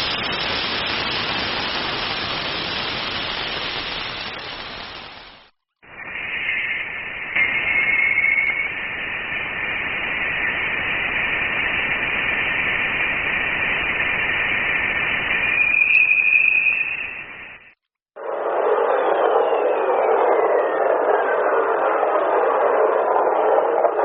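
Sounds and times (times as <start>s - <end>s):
radio static hiss: 0.0s - 15.6s
thin high whistling tone: 6.0s - 9.1s, 15.0s - 17.8s.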